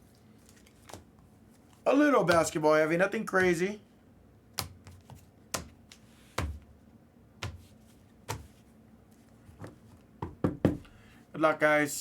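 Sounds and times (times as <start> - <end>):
dull knock: 9.6 - 10.9.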